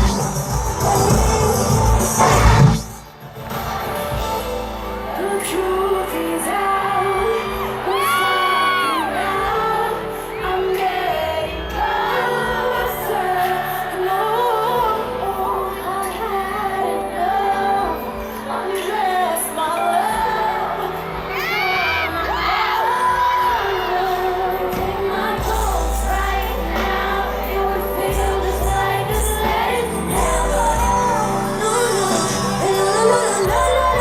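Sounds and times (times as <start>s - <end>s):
female vocal group singing: 0.0s - 3.1s, 4.6s - 34.0s
crowd whooping: 0.0s - 15.6s, 19.6s - 34.0s
pop band backing music: 0.0s - 34.0s.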